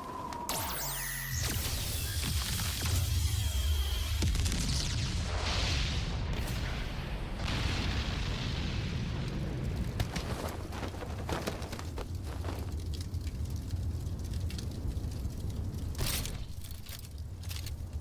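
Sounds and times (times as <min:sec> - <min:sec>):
sharp crackles: 0:00.0 - 0:18.0
deep rumble of explosions: 0:04.0 - 0:18.0.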